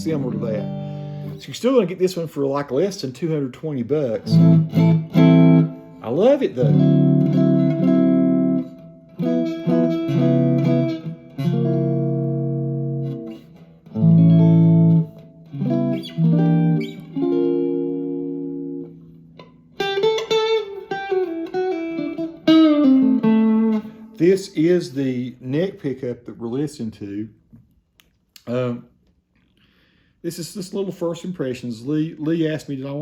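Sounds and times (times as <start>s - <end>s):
electric guitar chords: 0.0s - 1.4s, 4.2s - 6.0s, 6.6s - 24.2s.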